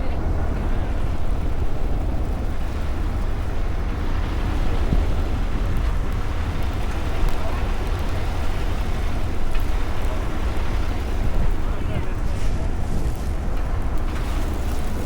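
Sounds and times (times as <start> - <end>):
city street noise: 0.0 - 15.0
wind buffeting microphone: 0.0 - 15.0.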